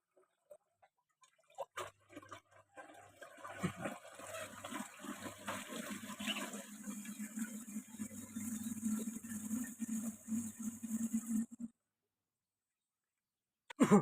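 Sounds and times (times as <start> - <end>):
water pouring: 1.2 - 11.7.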